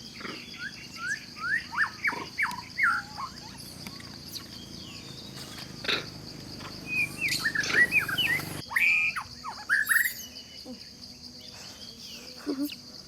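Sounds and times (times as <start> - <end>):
short high chirping calls: 0.6 - 5.8, 6.8 - 10.4
steady high-pitched buzz: 2.2 - 8.6.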